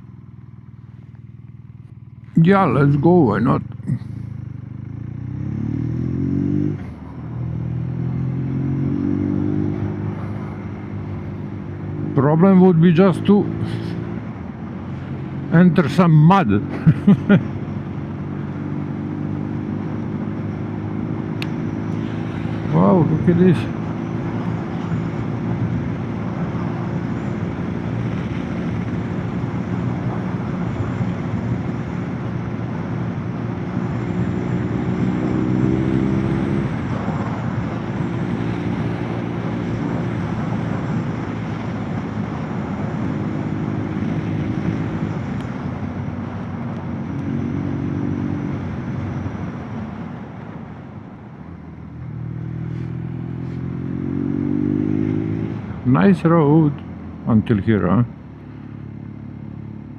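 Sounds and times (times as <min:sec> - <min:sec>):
motorcycle engine running: 0:00.0 - 0:48.5, 0:51.7 - 0:54.4
wind and road noise: 0:00.0 - 0:59.9.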